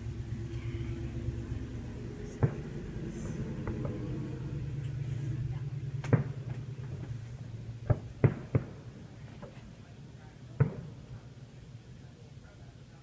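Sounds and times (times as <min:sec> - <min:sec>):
fireworks bangs: 0:02.3 - 0:04.2, 0:06.0 - 0:07.2, 0:07.8 - 0:09.6, 0:10.5 - 0:11.2.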